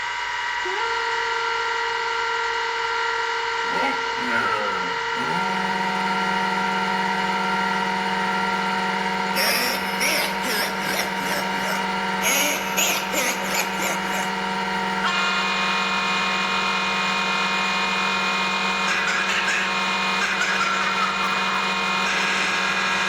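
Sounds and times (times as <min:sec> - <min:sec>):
small electric motor whining: 0:00.0 - 0:23.0
voice or animal calls: 0:03.7 - 0:05.5, 0:09.4 - 0:14.4, 0:18.8 - 0:21.4.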